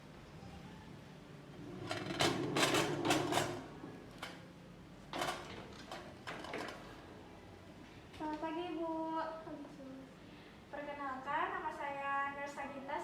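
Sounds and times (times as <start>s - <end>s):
objects clattering and rattling: 1.7s - 4.5s, 5.1s - 7.0s.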